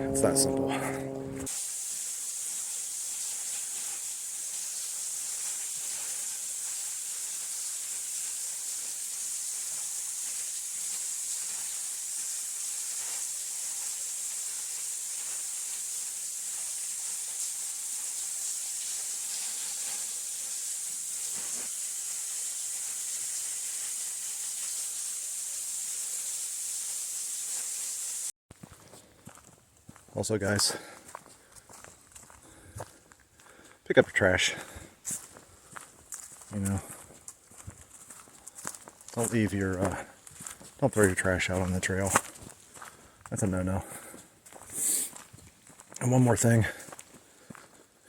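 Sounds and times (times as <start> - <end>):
rushing water hiss: 1.4 - 28.4, 34.4 - 45.3.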